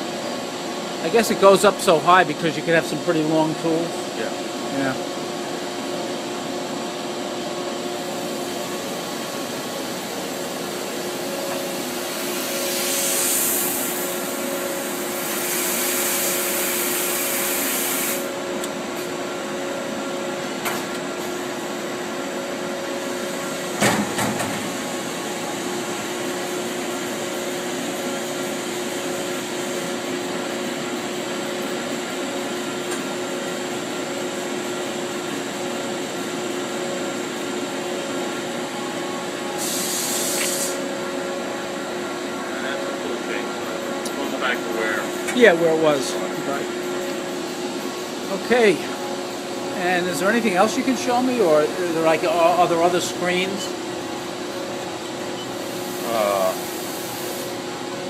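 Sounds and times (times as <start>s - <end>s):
machine humming: 0.0s - 58.0s
loud hissing bursts: 11.8s - 18.4s, 39.6s - 40.8s, 55.6s - 57.6s.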